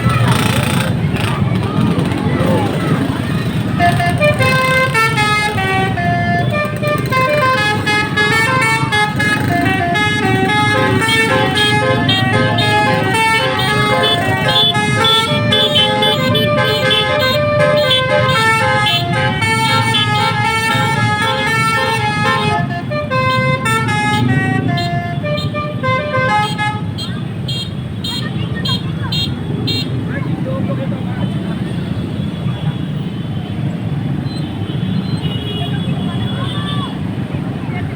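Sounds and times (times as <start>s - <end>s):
bus engine rumble: 0.0s - 33.0s
street noise: 0.0s - 37.9s
multi-tone bus horn playing a tune: 2.9s - 30.0s.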